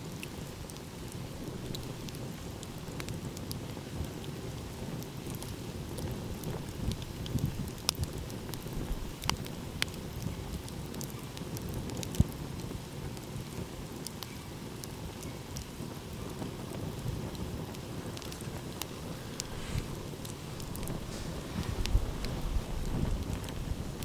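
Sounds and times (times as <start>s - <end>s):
campfire crackling and popping: 0.0s - 24.0s
steady low rumble: 18.2s - 24.0s.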